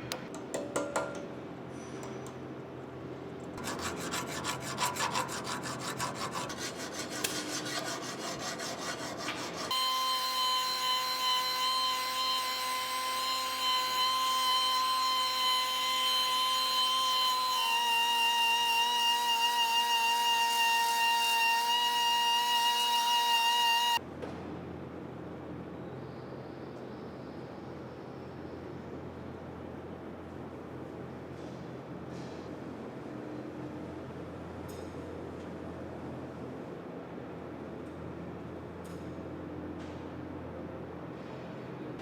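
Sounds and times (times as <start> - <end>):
filing and rubbing metal: 3.6 - 9.8
high multi-tone whine: 9.7 - 24.0.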